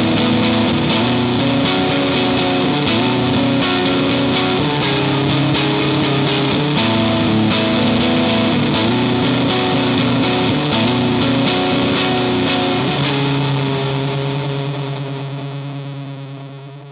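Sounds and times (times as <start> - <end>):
electric guitar chords with chorus: 0.0 - 16.9.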